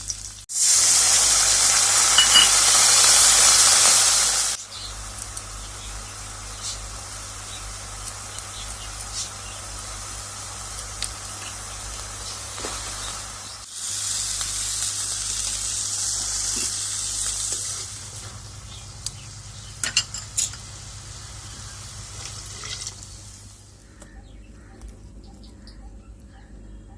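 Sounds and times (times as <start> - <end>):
food sizzling in oil: 0.0 - 23.7
utensil clinking against pan: 2.2 - 2.8.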